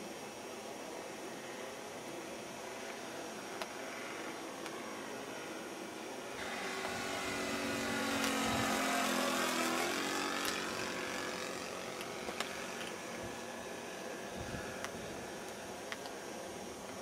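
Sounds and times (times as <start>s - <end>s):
propeller plane flying past: 6.4s - 14.0s.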